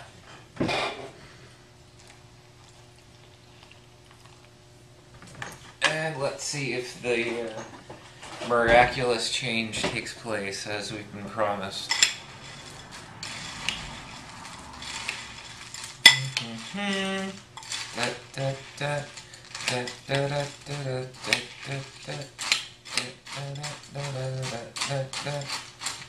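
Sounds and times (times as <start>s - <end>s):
spoon scraping in cereal bowl: 11.9s - 26.0s
man humming: 16.1s - 25.6s.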